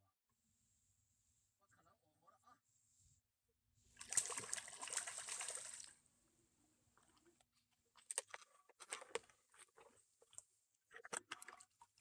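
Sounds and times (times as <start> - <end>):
water splashing and churning: 4.0 - 5.9.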